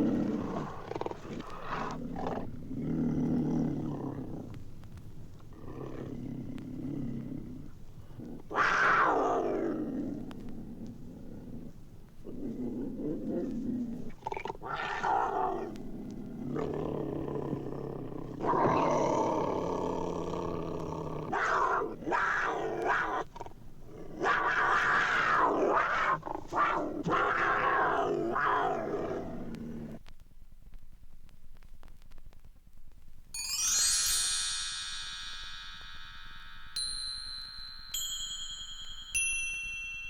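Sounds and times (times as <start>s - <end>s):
lion roaring and growling: 0.0s - 4.6s, 5.4s - 30.0s.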